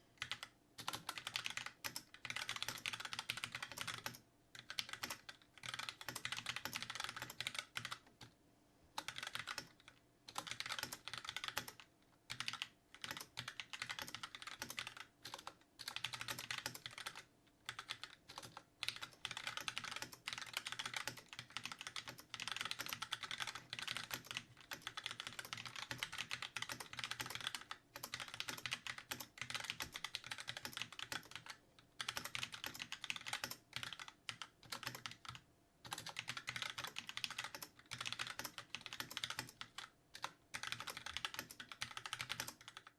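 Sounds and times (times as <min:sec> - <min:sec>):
mechanical keyboard typing: 0:00.2 - 0:08.4, 0:09.0 - 0:42.9.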